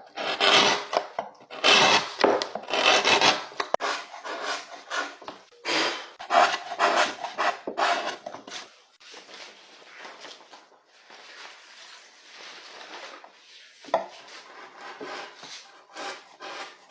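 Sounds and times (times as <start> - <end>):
hand tool scraping wood: 0.1 - 8.7, 13.9 - 16.9.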